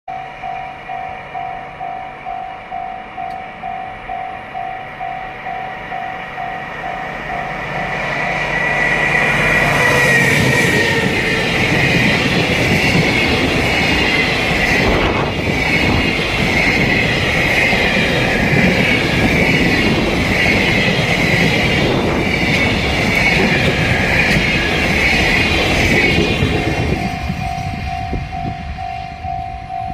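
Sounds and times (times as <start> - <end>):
level crossing warning bell: 0.1 - 22.0, 23.4 - 29.9
freight train rumbling past: 0.1 - 29.9
wheels on rails: 3.2 - 29.9.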